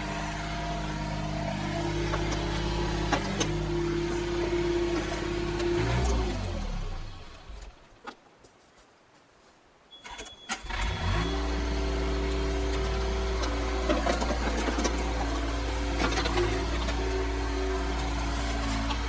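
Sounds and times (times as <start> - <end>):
diesel engine starting and running: 0.0 - 7.9, 10.0 - 19.0
short high beep: 9.9 - 11.4.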